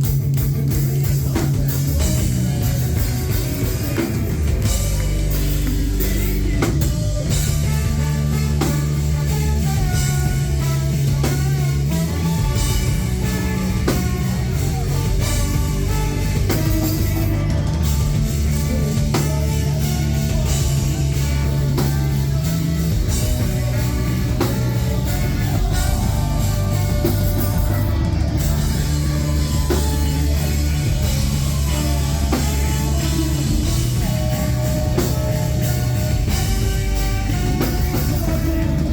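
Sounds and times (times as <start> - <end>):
drum kit: 0.0 - 38.9
electric guitar: 0.0 - 38.9
heavy bass line: 0.0 - 38.9.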